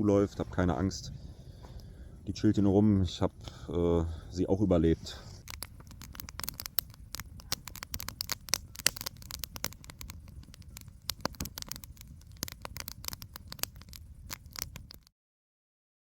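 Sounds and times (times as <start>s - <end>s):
campfire crackling: 0.0s - 15.1s.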